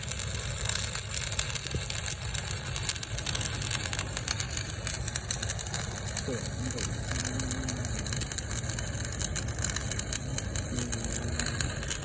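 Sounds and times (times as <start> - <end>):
welding arc crackling: 0.0 - 12.0
engine running: 6.3 - 8.4.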